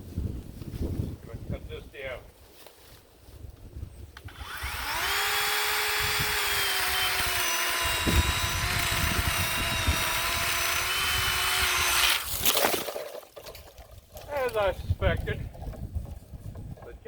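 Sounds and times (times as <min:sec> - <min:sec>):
electric chainsaw whining: 0:04.3 - 0:12.4.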